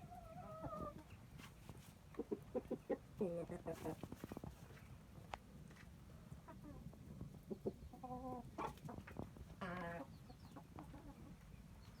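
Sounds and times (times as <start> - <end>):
chickens clucking: 0.0 - 4.4, 6.4 - 11.6.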